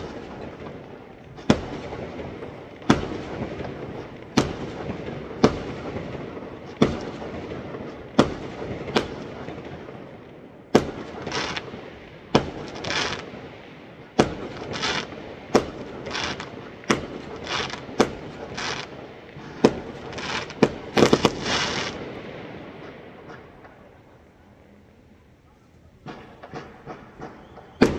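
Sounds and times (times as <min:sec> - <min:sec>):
fireworks bangs: 0:00.0 - 0:24.7, 0:25.4 - 0:27.9
fireworks hiss: 0:11.0 - 0:13.6, 0:14.3 - 0:23.9.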